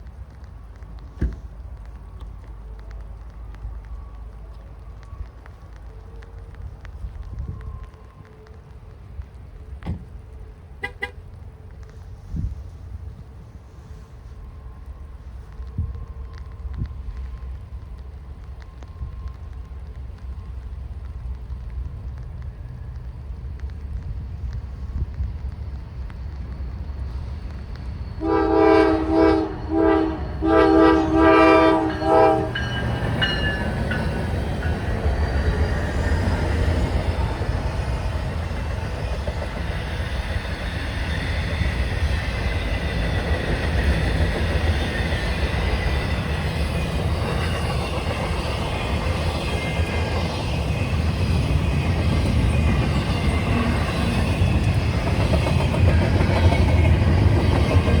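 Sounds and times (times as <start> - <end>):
freight train rolling past: 0.0 - 58.0
wheels on rails: 0.0 - 58.0
locomotive air horn blasts: 10.8 - 11.2, 28.2 - 32.8.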